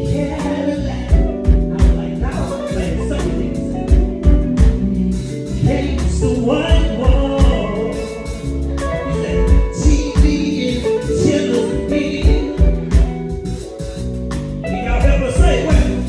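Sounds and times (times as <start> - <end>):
person singing: 0.0 - 14.0, 14.7 - 16.0
electric guitar: 0.0 - 16.0
drum beat: 1.1 - 3.1, 3.9 - 5.1, 5.9 - 7.8, 9.5 - 10.6, 12.2 - 13.9, 15.0 - 16.0.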